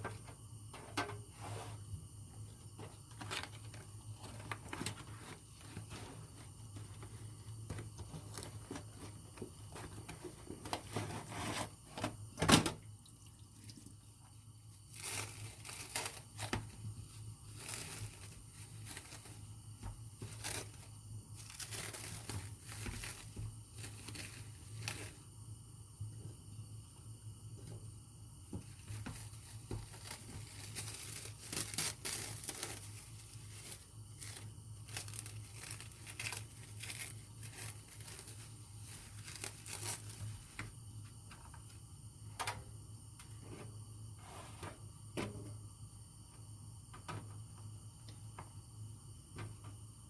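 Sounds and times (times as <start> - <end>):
steady low hum: 0.0 - 50.0
crinkling and tearing: 14.9 - 19.5, 20.2 - 25.2, 28.9 - 40.4.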